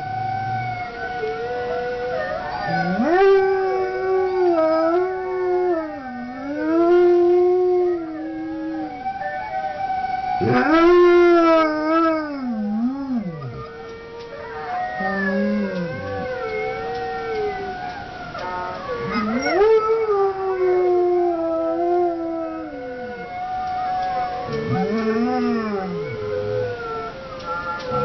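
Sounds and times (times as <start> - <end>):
dog howling: 0.0 - 28.0.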